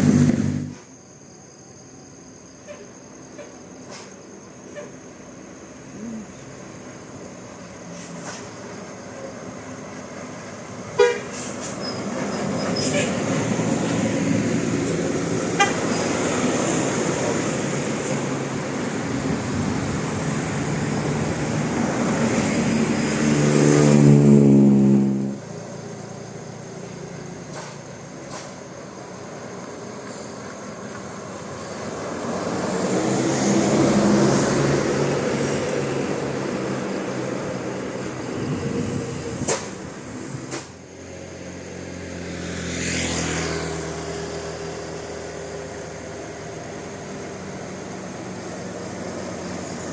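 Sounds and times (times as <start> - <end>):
road traffic passing: 0.0 - 49.9
multi-tone bus horn: 10.9 - 11.5, 15.5 - 16.0, 24.2 - 25.4
heavy vehicle passing: 11.4 - 27.7, 29.8 - 49.9.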